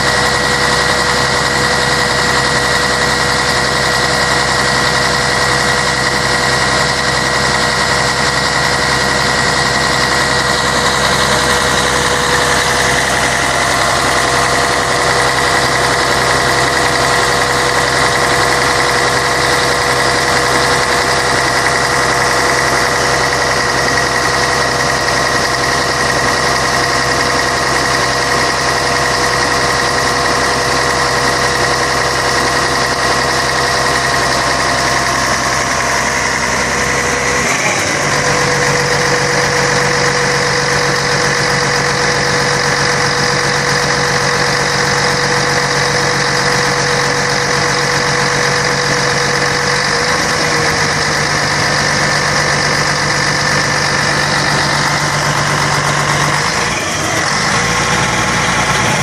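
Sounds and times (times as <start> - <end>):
diesel bus engine running: 0.0 - 59.0
steady whine: 0.0 - 59.0.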